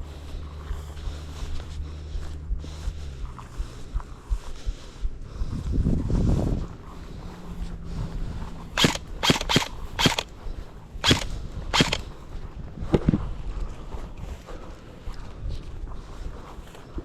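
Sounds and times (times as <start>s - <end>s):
low rumble: 0.0s - 17.0s
airsoft gun shots: 8.8s - 10.3s, 11.0s - 12.0s.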